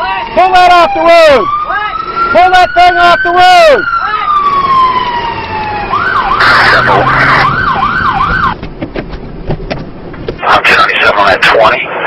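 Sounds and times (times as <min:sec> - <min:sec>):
police siren wailing and yelping: 0:00.0 - 0:08.6.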